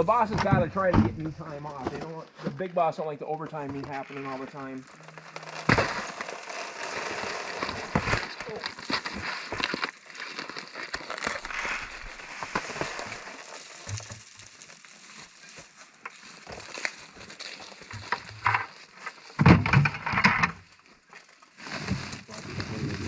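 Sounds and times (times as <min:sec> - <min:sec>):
bait crinkling and rustling: 0:03.8 - 0:19.4.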